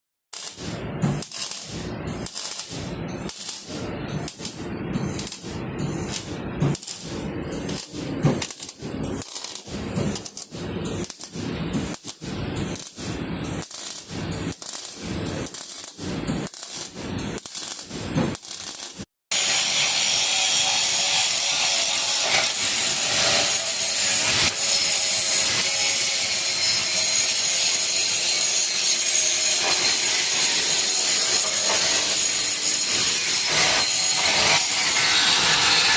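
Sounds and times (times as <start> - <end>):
power tool hissing and grinding: 12.7 - 35.9.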